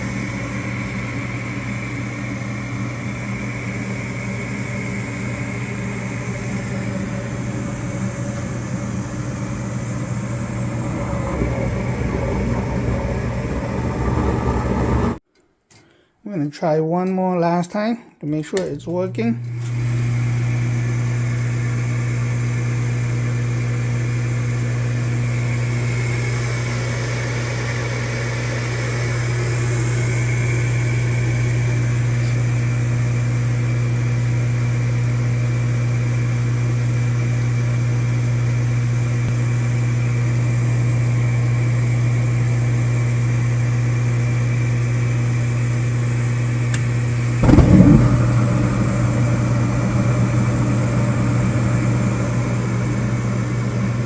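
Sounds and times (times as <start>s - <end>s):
blower motor humming: 0.0s - 15.2s, 19.2s - 34.3s, 39.0s - 54.0s
loud rushing noise: 10.3s - 15.2s, 47.4s - 50.0s.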